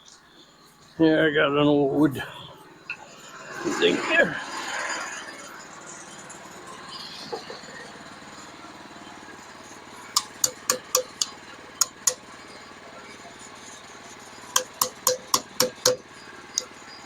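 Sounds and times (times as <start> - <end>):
small engine idling: 2.2 - 17.0
hammer blows on metal: 10.2 - 12.3, 14.6 - 16.7.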